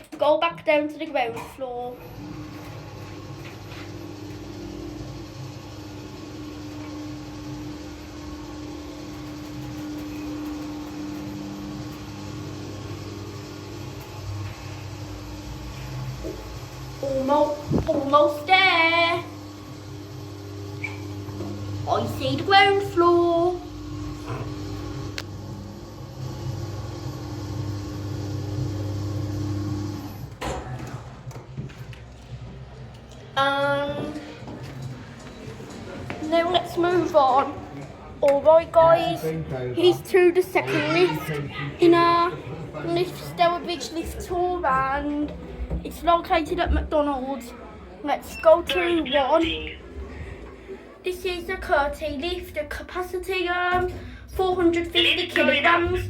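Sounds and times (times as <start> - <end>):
lift drive humming: 2.0 - 30.6.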